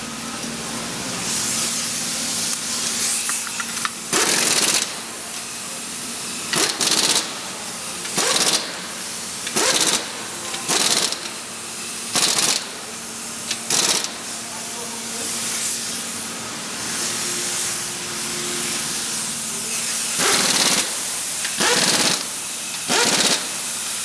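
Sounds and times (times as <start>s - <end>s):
pneumatic impact wrench bursts: 1.2s - 14.3s, 18.6s - 24.0s.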